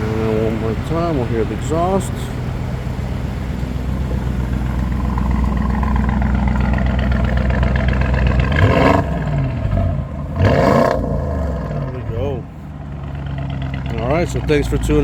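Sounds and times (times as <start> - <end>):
car engine idling and revving: 0.0 - 15.0.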